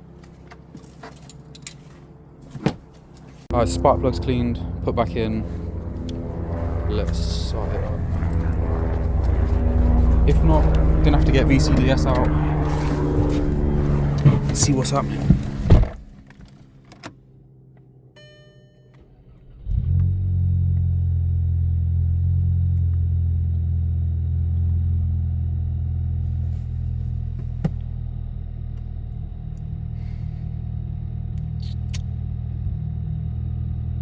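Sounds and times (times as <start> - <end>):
car engine starting and idling: 0.0 - 34.0.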